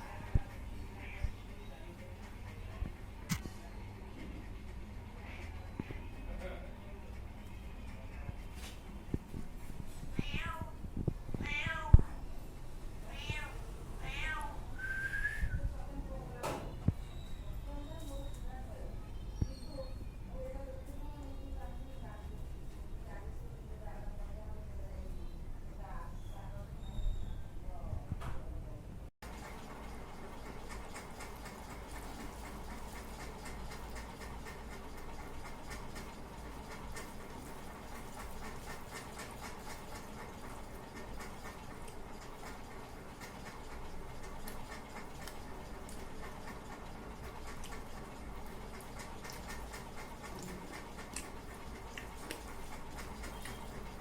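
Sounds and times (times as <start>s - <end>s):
cat meowing: 10.1s - 10.8s, 11.4s - 12.1s, 13.0s - 14.6s.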